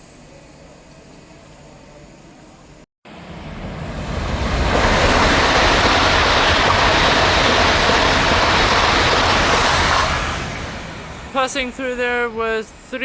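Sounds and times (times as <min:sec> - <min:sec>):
electric train passing at speed: 0:03.1 - 0:12.9.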